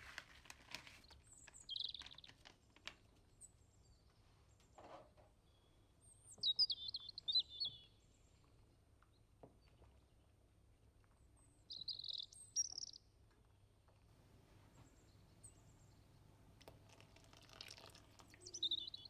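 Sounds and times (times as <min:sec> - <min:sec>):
small bird chirping: 0:01.3 - 0:02.5, 0:05.6 - 0:08.0, 0:11.5 - 0:13.1, 0:14.3 - 0:19.0.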